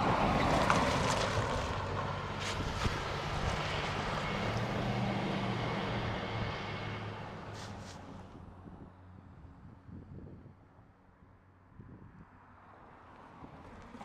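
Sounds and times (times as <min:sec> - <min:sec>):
distant engine droning: 0:00.0 - 0:09.8
outdoor noise haze: 0:00.0 - 0:14.0.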